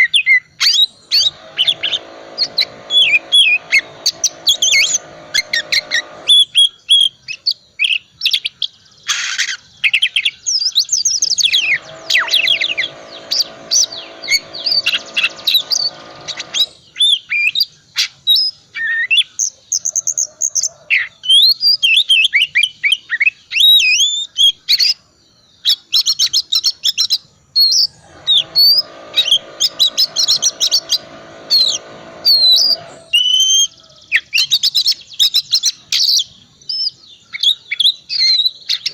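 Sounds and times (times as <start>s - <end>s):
low steady buzz: 1.1s - 6.4s, 11.5s - 16.7s, 28.0s - 33.1s.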